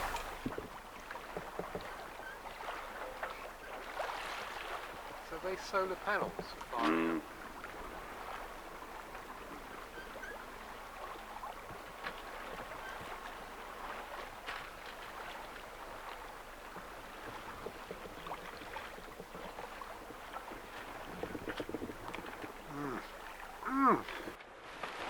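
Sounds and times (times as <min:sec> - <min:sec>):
water rushing along a hull: 0:00.0 - 0:25.0.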